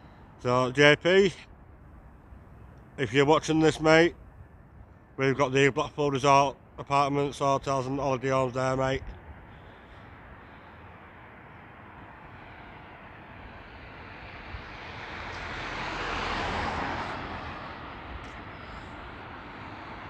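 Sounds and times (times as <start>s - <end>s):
outdoor background noise: 0.0s - 20.0s
vehicle passing by: 10.9s - 20.0s.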